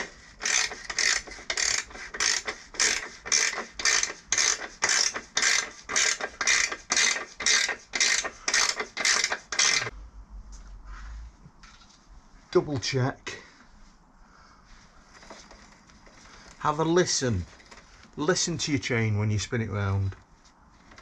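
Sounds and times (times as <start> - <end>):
ratchet wrench clicking: 0.4 - 9.9.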